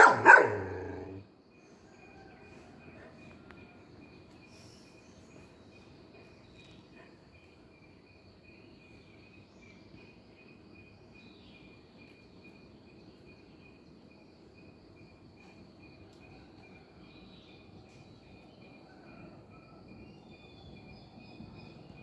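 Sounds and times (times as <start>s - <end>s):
crickets chirping: 0.0s - 1.2s.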